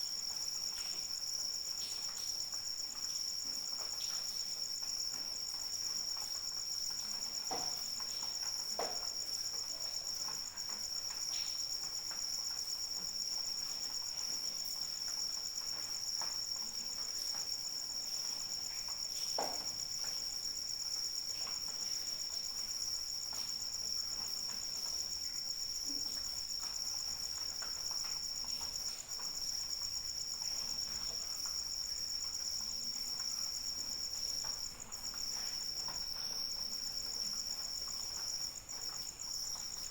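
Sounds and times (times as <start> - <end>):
crickets trilling: 0.0 - 39.9
light rain drips: 0.0 - 39.9.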